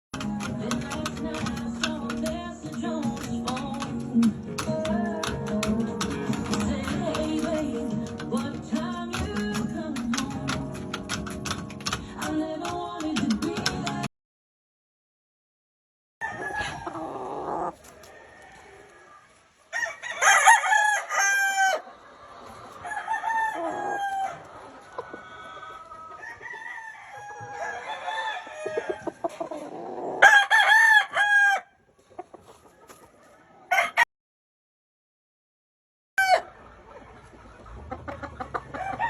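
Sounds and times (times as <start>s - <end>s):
chickens clucking: 0.2s - 14.1s, 16.2s - 19.7s, 20.7s - 30.4s, 31.9s - 34.0s, 36.2s - 39.0s
roosters crowing: 16.2s - 31.8s, 33.5s - 34.0s, 36.2s - 36.6s, 37.8s - 39.0s.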